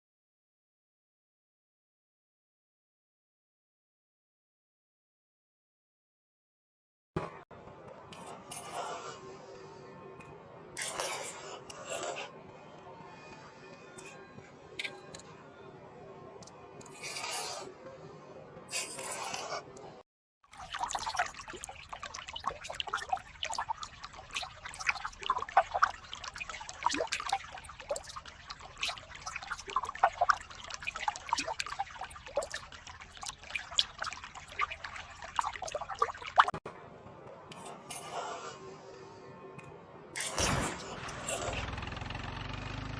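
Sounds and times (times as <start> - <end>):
water trickling and dripping: 20.5 - 36.6.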